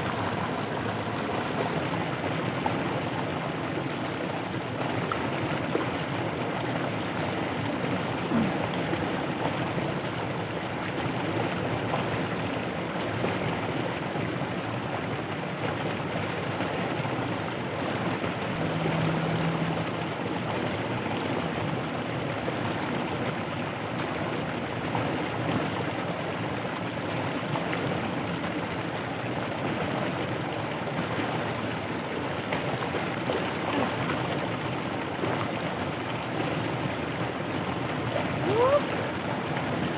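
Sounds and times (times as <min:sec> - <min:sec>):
floodwater rushing through channel: 0:00.0 - 0:39.9
low hum: 0:18.3 - 0:21.6.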